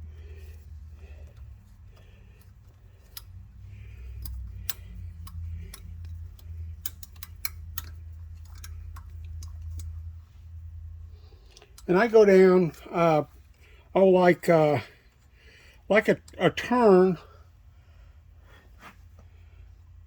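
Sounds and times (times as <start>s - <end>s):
steady low hum: 0.0s - 20.0s
small metal clicks: 1.2s - 10.2s.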